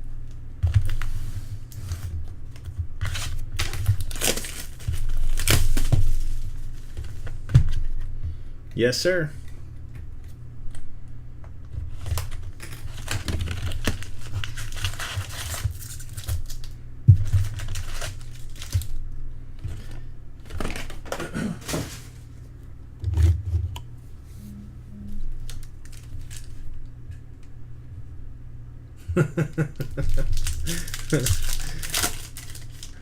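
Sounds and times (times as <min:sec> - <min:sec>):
card pack wrappers crinkling: 0:01.8 - 0:07.3, 0:11.9 - 0:19.0, 0:19.7 - 0:22.3, 0:25.3 - 0:26.9, 0:29.8 - 0:33.0.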